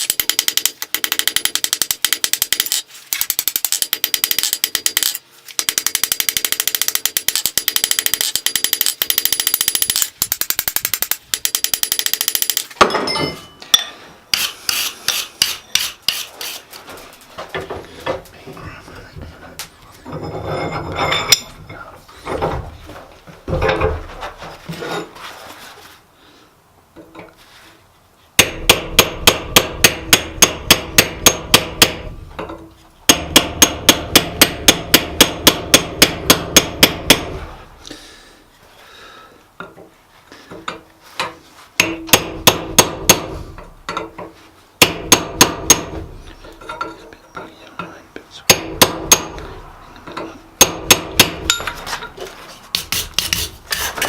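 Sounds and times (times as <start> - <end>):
hammer striking steel on anvil: 11.6 - 16.3, 28.4 - 32.1, 33.1 - 37.4, 41.8 - 44.1, 44.8 - 46.1, 48.5 - 49.5, 50.1 - 51.8.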